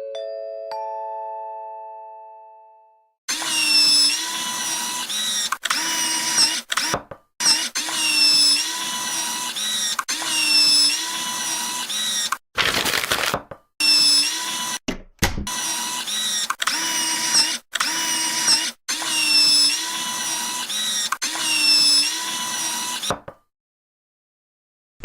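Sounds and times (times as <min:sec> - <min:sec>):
power tool whine: 0:03.3 - 0:12.4, 0:13.8 - 0:14.8, 0:15.5 - 0:23.2.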